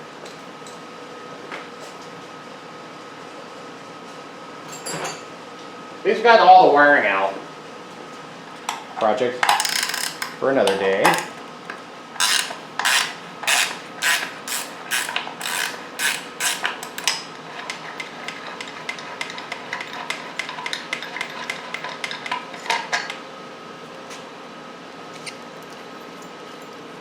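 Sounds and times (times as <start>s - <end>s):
ratchet wrench strokes: 9.6s - 10.4s, 11.1s - 11.3s, 12.2s - 17.1s.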